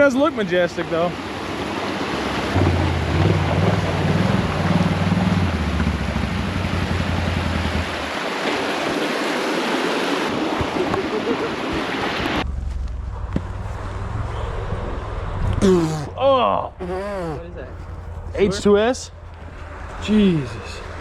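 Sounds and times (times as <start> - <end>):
rushing water: 0.0 - 12.4
low engine hum: 1.2 - 8.3, 12.3 - 21.0.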